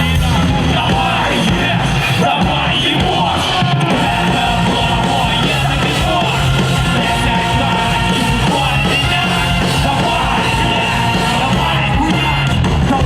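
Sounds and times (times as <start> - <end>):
live rock band playing: 0.0 - 13.0.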